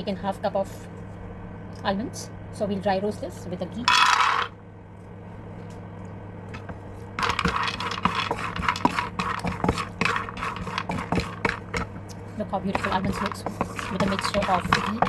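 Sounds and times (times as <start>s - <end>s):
almonds rattling in a frying pan: 3.9s - 4.5s, 7.2s - 12.0s, 12.7s - 15.0s.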